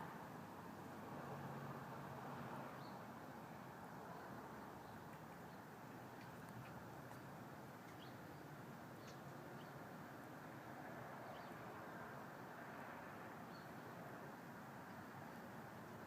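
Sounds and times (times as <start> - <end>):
small birds chirping: 4.6 - 9.8.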